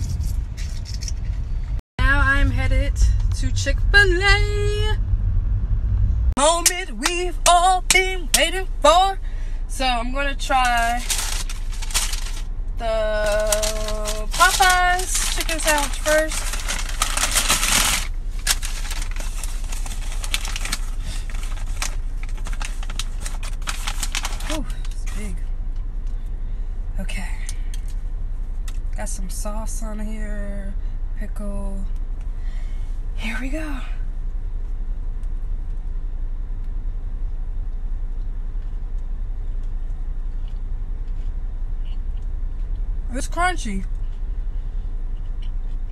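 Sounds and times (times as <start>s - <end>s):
car engine running: 0.0s - 45.9s
sandwich wrapper crinkling: 10.5s - 12.5s, 13.2s - 25.2s
crunchy chewing: 38.5s - 42.8s, 45.0s - 45.9s.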